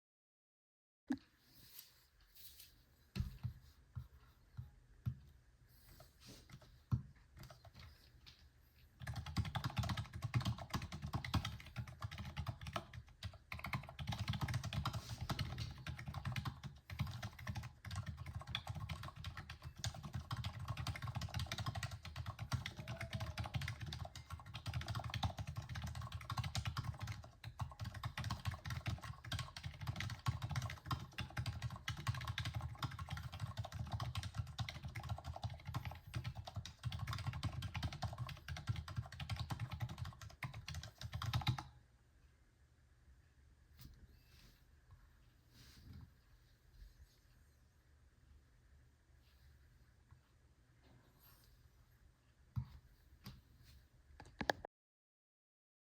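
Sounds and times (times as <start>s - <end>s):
fast typing on mechanical keyboard: 7.4s - 7.9s, 9.0s - 41.7s.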